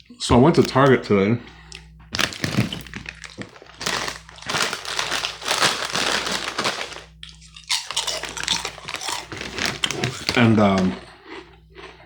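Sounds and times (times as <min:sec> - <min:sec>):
food packaging crinkling: 0:02.1 - 0:11.1.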